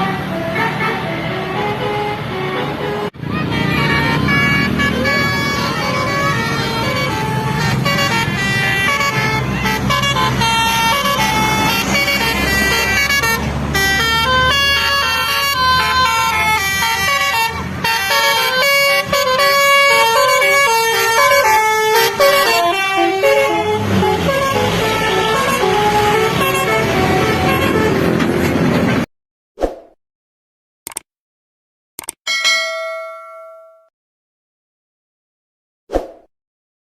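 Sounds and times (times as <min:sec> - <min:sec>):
musical air horn melody: 0:00.0 - 0:28.2
bus engine low rumble: 0:00.0 - 0:29.1.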